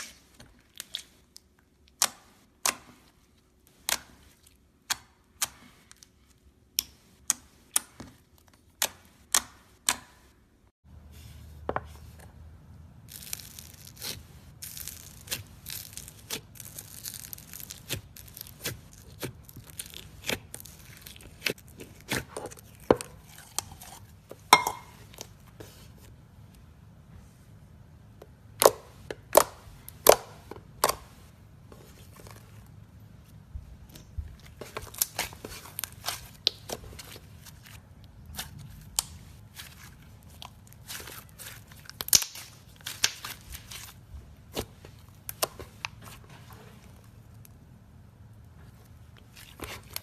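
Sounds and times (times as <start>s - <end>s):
slime popping and crackling: 13.1s - 23.2s, 38.2s - 44.0s.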